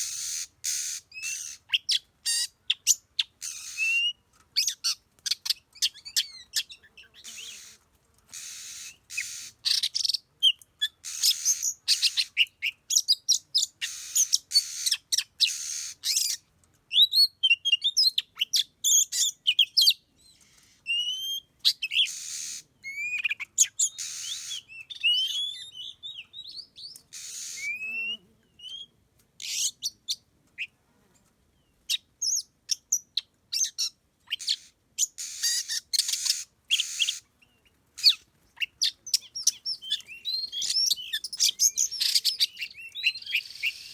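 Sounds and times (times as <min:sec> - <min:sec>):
harsh rasping bird scolds: 0:07.2 - 0:09.5
whistled bird song notes: 0:22.9 - 0:28.9, 0:38.7 - 0:43.9.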